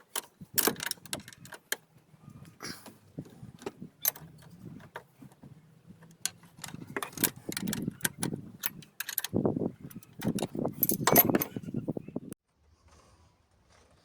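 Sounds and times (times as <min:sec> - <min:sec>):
metallic clicks and clinks: 0:00.0 - 0:01.8, 0:06.0 - 0:11.6.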